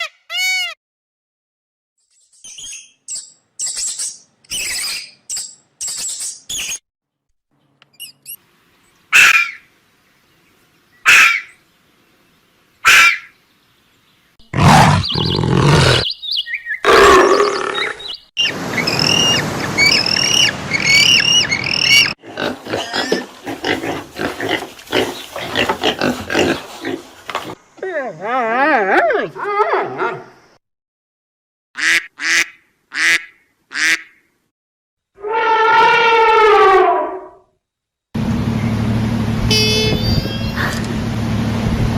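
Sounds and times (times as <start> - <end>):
animal calls: 14.5 - 16.2.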